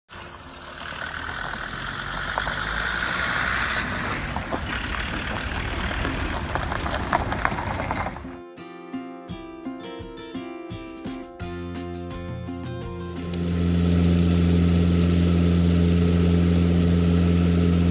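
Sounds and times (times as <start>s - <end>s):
engine running: 0.1s - 8.2s, 13.0s - 17.9s
acoustic guitar music: 8.2s - 17.9s.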